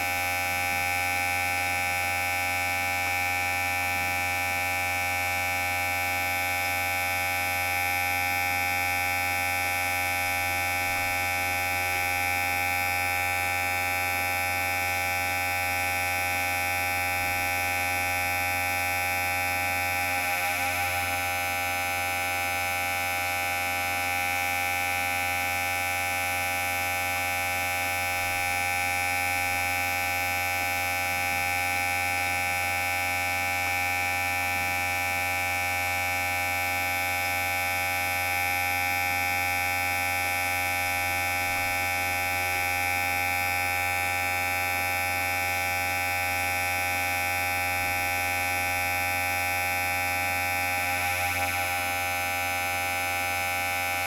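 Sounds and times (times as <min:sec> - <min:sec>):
electric hair clipper buzzing: 0:07.8 - 0:22.6, 0:27.4 - 0:32.4, 0:35.6 - 0:54.0.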